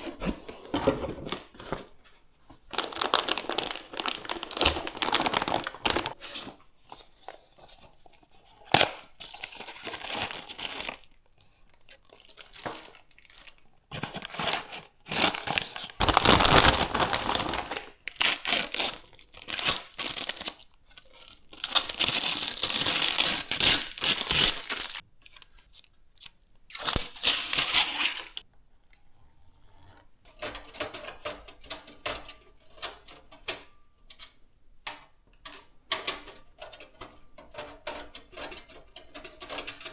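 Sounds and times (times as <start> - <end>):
plastic wrapping tearing and crinkling: 2.7 - 6.2, 8.7 - 11.1, 12.0 - 28.4.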